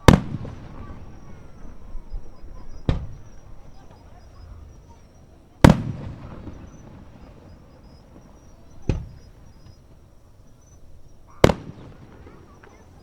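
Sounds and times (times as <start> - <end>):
fireworks shell boom: 2.8 - 3.4, 8.8 - 9.8.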